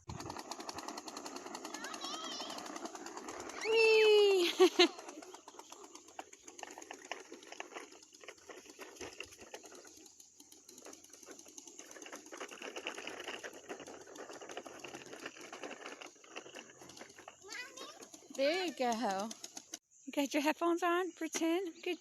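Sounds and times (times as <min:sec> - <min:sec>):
toy lawn mower clicking rattle: 0:00.0 - 0:19.8.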